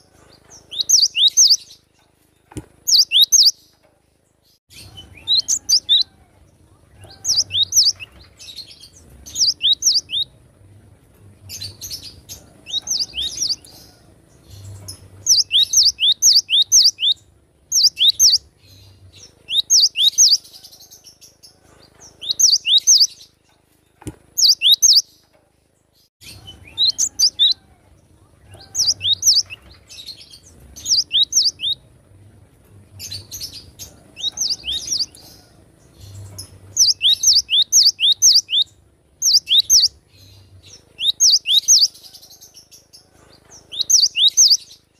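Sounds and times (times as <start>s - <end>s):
bird singing whistled notes: 0.7s - 1.8s, 2.9s - 3.6s, 7.1s - 8.1s, 8.8s - 10.3s, 14.6s - 18.5s, 19.5s - 20.4s, 22.2s - 23.2s, 24.4s - 25.1s, 28.6s - 29.6s, 30.8s - 31.8s, 36.8s - 40.0s, 40.7s - 42.0s, 43.7s - 44.8s.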